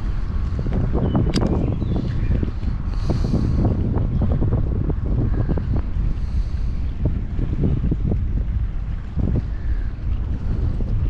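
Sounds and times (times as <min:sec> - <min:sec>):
water splashing against hull: 0:00.0 - 0:11.0
wind buffeting microphone: 0:00.0 - 0:11.0
sharp click: 0:01.3 - 0:01.6.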